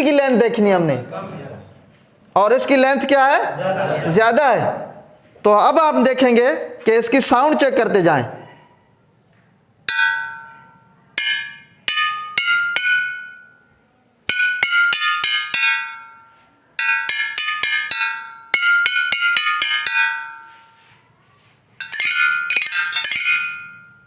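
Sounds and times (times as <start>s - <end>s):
bottles struck ringing notes: 9.8s - 21.0s, 21.8s - 24.0s.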